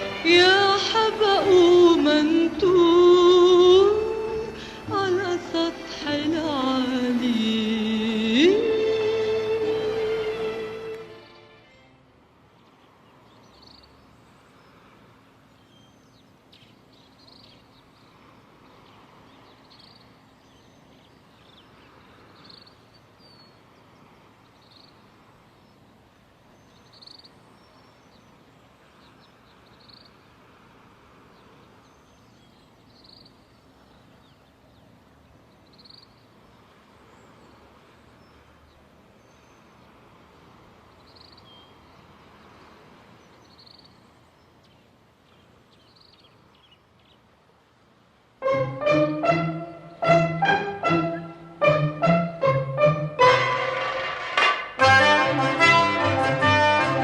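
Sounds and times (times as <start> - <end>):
sea waves washing: 0.0 - 15.6, 17.7 - 26.5, 36.4 - 45.7, 47.3 - 57.0.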